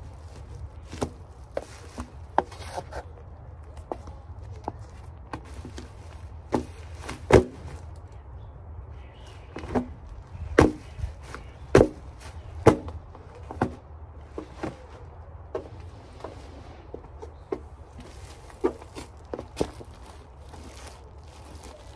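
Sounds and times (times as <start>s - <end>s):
cardboard boxes crushed underfoot: 0.0s - 3.0s, 3.9s - 8.0s, 9.5s - 13.8s, 17.9s - 21.9s.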